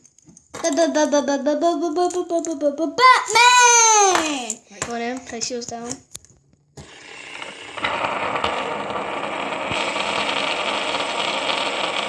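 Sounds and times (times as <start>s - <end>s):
fidget spinners whirring: 6.8s - 12.0s.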